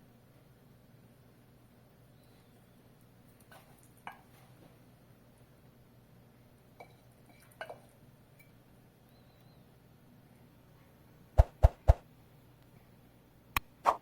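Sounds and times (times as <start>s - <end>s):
faint steady hum: 0.0s - 13.9s
kitchenware clinking: 6.8s - 8.6s.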